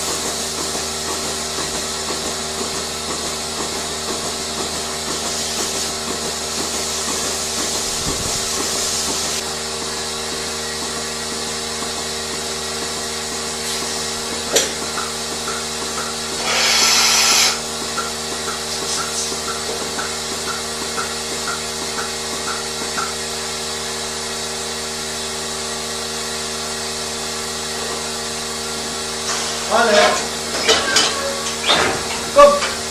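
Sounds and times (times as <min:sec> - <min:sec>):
barn machinery humming: 0:00.0 - 0:32.9.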